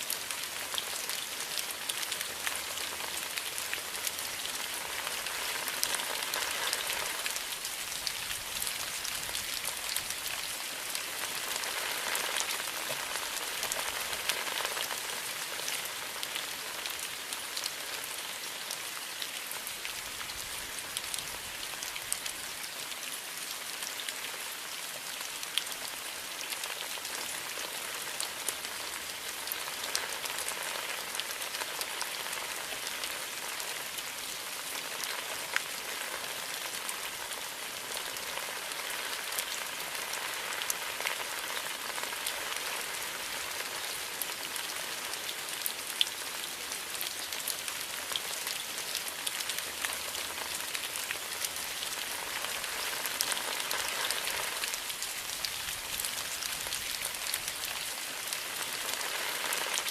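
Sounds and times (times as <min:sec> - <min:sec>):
raindrops ticking: 0:00.0 - 0:17.8
steady rain hiss: 0:00.0 - 0:59.9.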